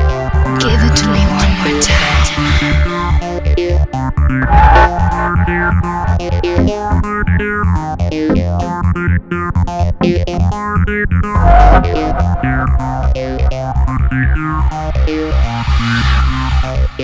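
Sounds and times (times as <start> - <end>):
synthesizer chords: 0.0 - 4.6.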